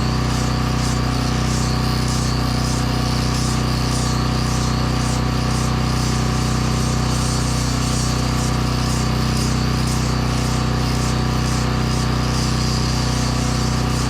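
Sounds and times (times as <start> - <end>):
portable generator running: 0.0 - 14.0
sanding on wood: 0.0 - 14.0.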